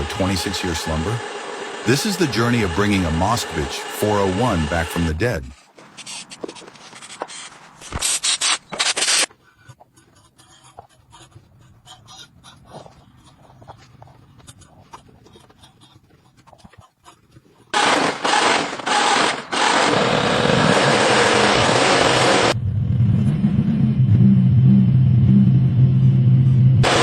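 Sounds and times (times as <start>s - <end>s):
abrasive grinding noise: 0.0s - 9.3s.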